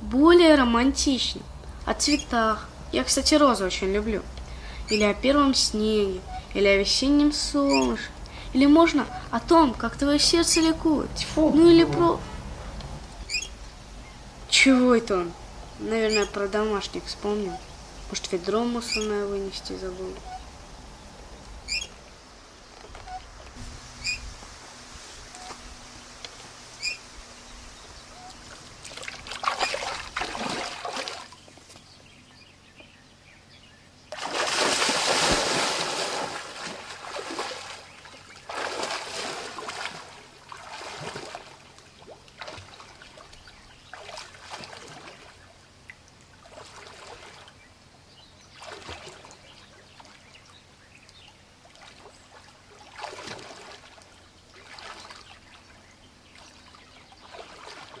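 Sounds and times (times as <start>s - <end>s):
swing creaking and swishing: 0.0s - 32.1s.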